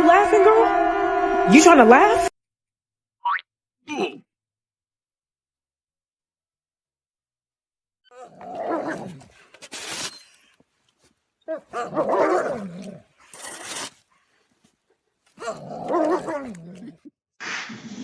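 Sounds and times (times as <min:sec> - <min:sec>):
dog grumbling: 0:08.2 - 0:09.4, 0:11.5 - 0:13.5, 0:15.3 - 0:17.1.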